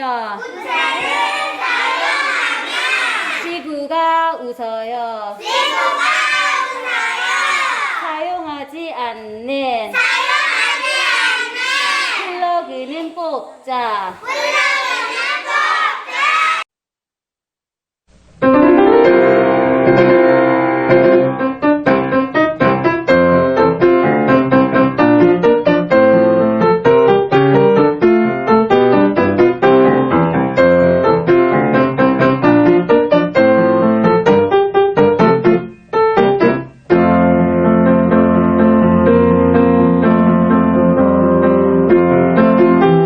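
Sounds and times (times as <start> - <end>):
child's voice: 0.2 - 3.8, 5.3 - 8.5, 9.2 - 13.4, 14.0 - 16.6
piano music with quick notes: 18.4 - 43.0.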